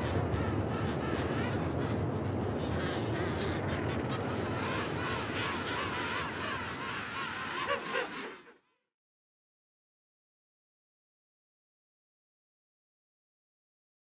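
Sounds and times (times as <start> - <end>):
penguins squawking: 0.1 - 8.6.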